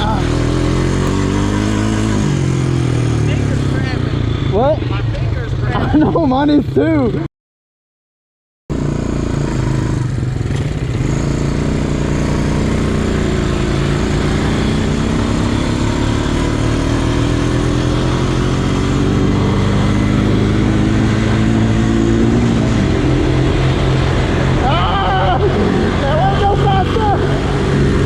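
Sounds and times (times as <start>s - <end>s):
atv engine running hard: 0.0s - 7.2s, 8.7s - 28.0s.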